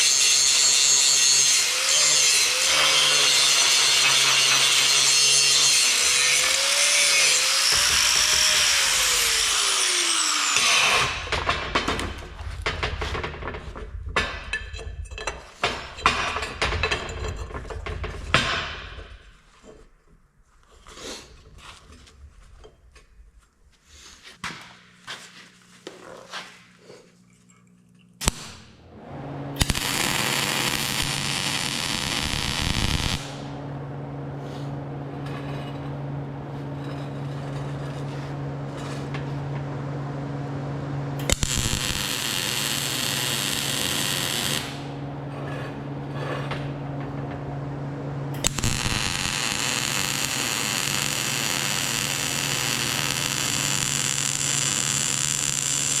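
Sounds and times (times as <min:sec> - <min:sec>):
machine hum: 0:02.3 - 0:20.6, 0:28.3 - 0:56.0
knocks and clinks of tools: 0:11.2 - 0:19.8.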